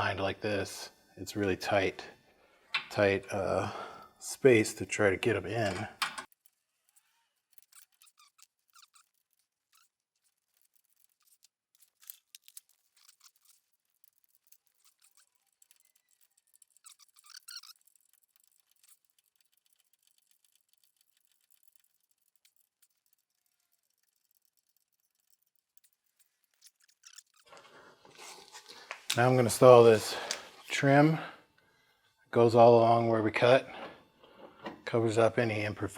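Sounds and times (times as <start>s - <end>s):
hardware scraping: 4.9s - 31.3s.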